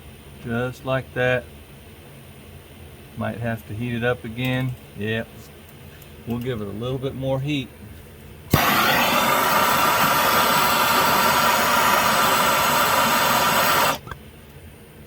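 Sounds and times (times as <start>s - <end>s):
torch flame rushing: 8.5s - 14.1s
torch lighting pop: 8.5s - 14.2s.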